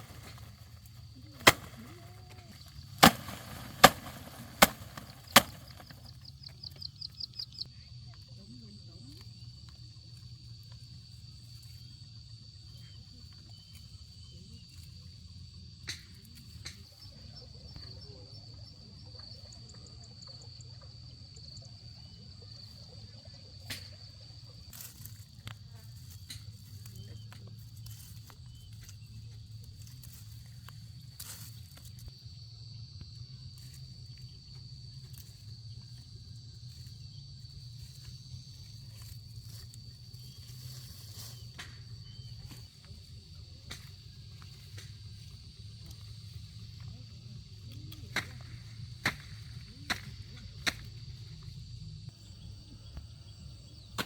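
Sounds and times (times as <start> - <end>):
sharp knocks and rustles: 0.0 - 6.3.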